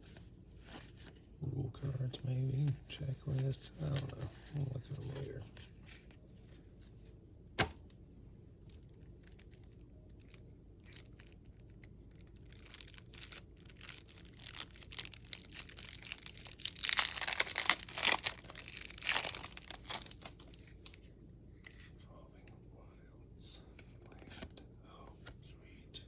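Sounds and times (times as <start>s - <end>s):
wrapper tearing and crinkling: 8.7s - 21.0s.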